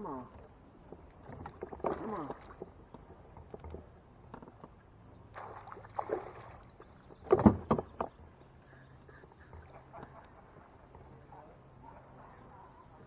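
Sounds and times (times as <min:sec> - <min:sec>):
water splashing: 0:05.3 - 0:07.6.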